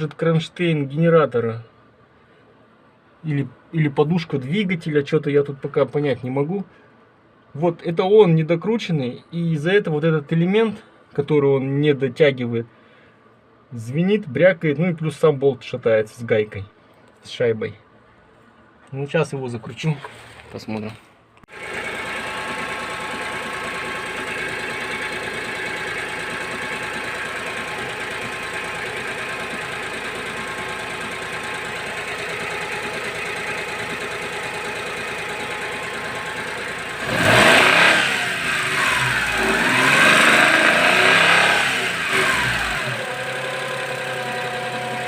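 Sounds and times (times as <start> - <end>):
car engine idling and revving: 21.5 - 45.0.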